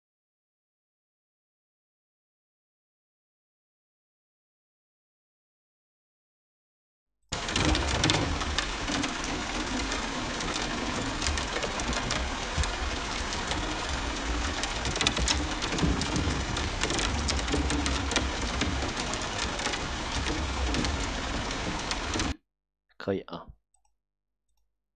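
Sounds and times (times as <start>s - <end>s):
dense noisy patter: 7.3s - 22.4s.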